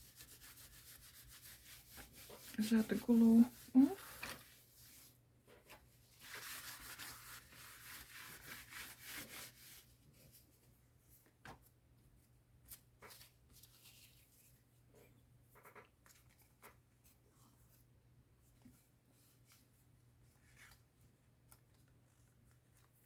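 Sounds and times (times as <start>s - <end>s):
paper rubbing: 0.0s - 5.1s, 6.2s - 9.9s.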